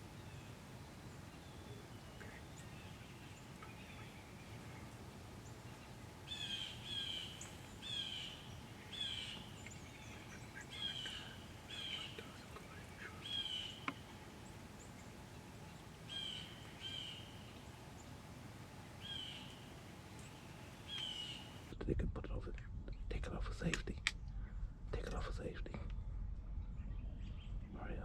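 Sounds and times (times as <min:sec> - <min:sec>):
birds calling: 0:00.0 - 0:21.7.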